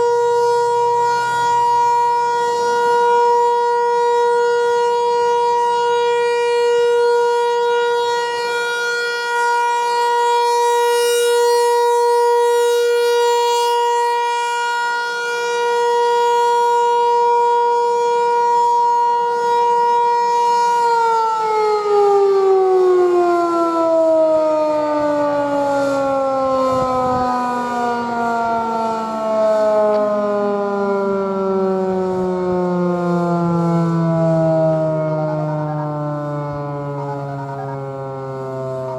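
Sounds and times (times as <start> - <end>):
warning siren winding down: 0.0 - 38.9.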